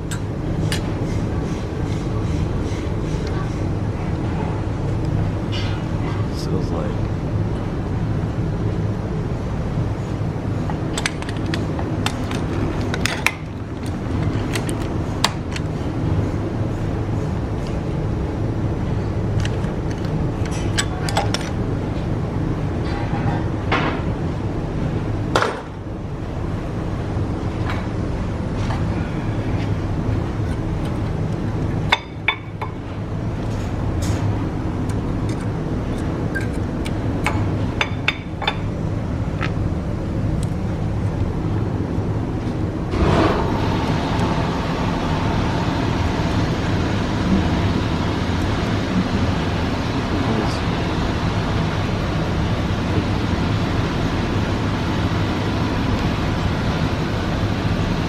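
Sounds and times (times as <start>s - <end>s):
steady low rumble: 24.2s - 58.0s.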